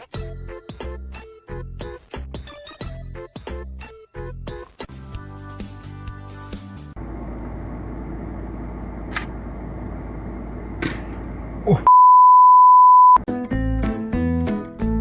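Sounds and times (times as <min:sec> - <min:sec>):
background music: 0:00.0 - 0:07.0, 0:13.3 - 0:15.0
censor bleep: 0:11.9 - 0:13.3.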